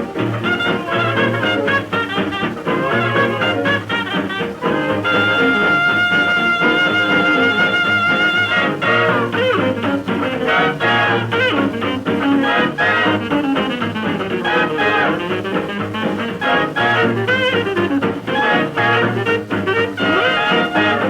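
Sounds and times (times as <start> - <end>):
jazz dance band on old record: 0.0 - 21.0.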